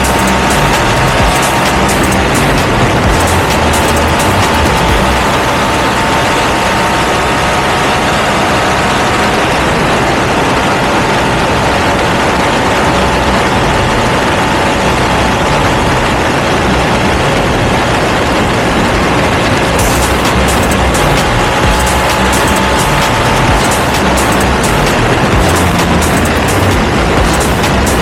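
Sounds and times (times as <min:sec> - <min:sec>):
loud motorcycle engine running: 0:00.0 - 0:28.0.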